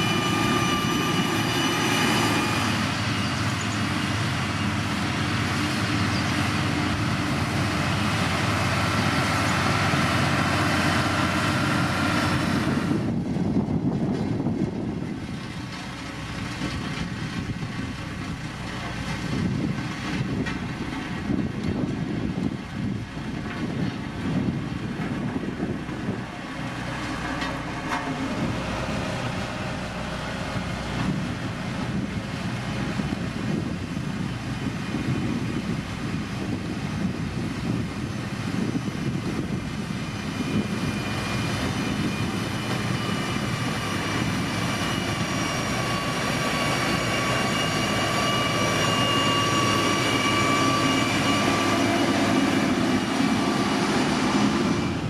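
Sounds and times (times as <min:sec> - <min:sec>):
steady high whine: 0:00.0 - 0:15.5, 0:25.2 - 0:55.0
diesel engine rumbling: 0:00.0 - 0:55.0.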